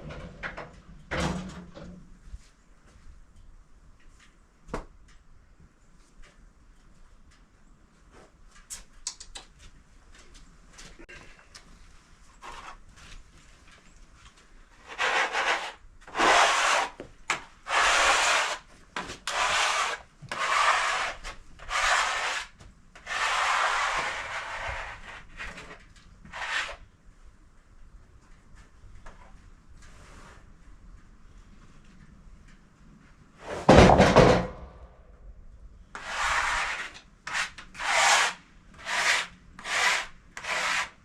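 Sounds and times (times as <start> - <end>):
scraping strokes on wood: 14.8 - 26.9, 35.9 - 41.0.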